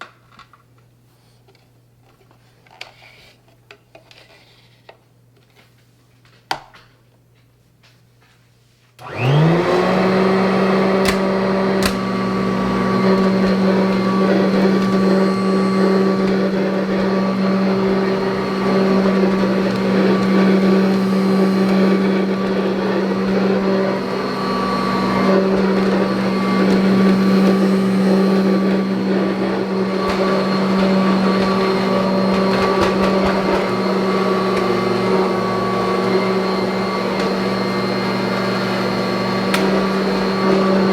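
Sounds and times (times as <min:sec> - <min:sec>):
vacuum cleaner motor running: 0:09.0 - 0:40.9.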